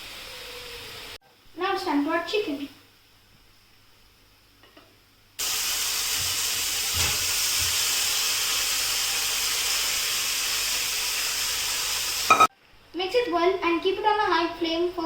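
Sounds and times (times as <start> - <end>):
chicken sizzling in a pan: 0.0 - 1.2, 5.4 - 12.5.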